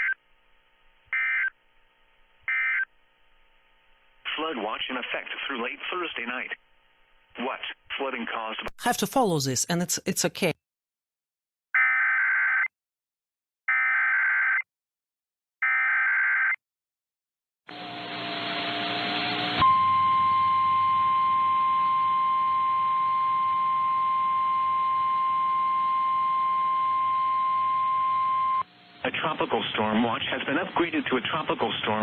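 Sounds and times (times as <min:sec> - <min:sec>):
steady warning alarm tone: 0:19.6 - 0:29.0.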